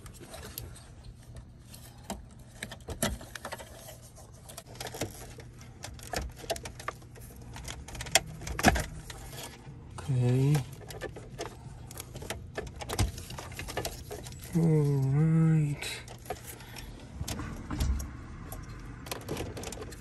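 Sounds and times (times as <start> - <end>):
plastic connectors clicking and rattling: 4.5 - 9.6, 10.3 - 14.6.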